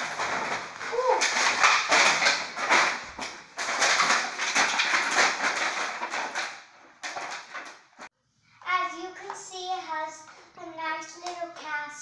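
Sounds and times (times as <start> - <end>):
toy packaging rustling and ripping: 0.0 - 8.1.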